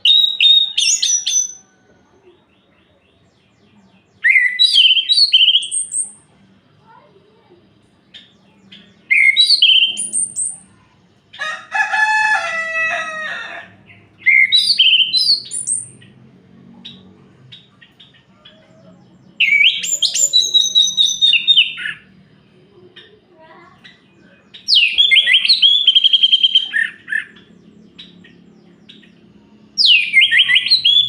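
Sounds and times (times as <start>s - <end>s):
thrush singing whistled phrases: 0.0s - 1.7s, 4.2s - 6.3s, 8.2s - 10.8s, 14.2s - 16.1s, 19.4s - 22.1s, 23.9s - 28.2s, 28.9s - 31.0s.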